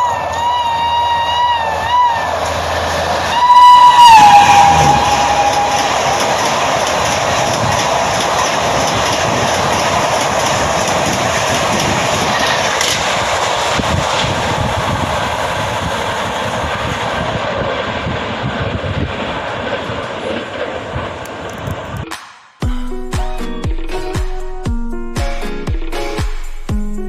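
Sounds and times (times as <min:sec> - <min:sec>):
train coaches rushing past: 0:00.0 - 0:22.1
wheels knocking over rail joints: 0:04.3 - 0:15.0.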